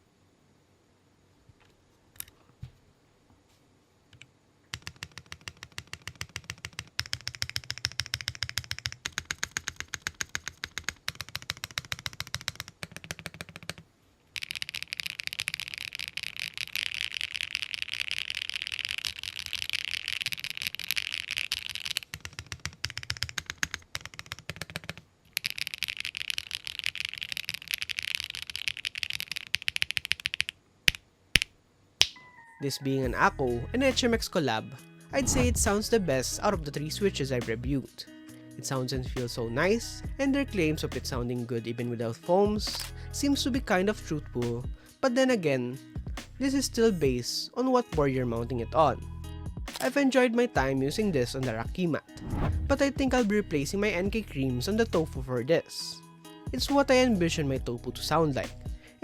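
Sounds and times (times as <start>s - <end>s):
mechanical keyboard typing: 4.2s - 13.8s, 14.4s - 30.5s.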